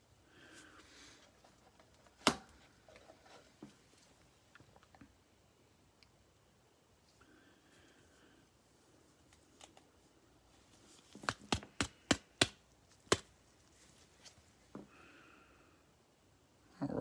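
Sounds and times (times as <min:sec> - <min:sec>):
cards being handled: 0:10.6 - 0:14.5.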